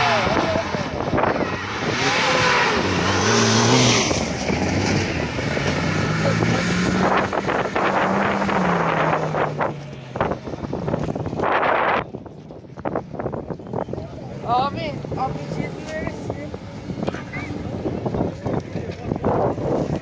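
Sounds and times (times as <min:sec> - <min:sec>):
vehicle engine revving hard: 0:00.0 - 0:10.3.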